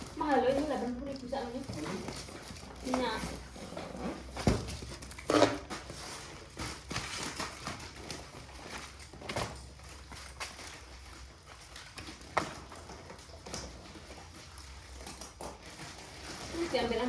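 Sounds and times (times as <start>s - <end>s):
packaging rustling: 0.0s - 17.0s.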